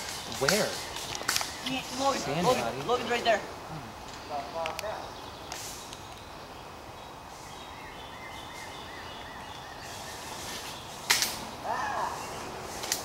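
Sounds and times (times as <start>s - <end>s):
bird chirps: 4.3s - 12.8s.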